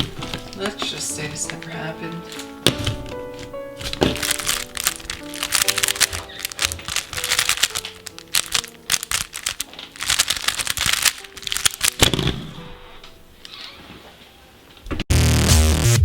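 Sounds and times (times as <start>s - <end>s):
background music: 0.0s - 13.5s
puzzle cube plastic clicks: 3.8s - 12.5s.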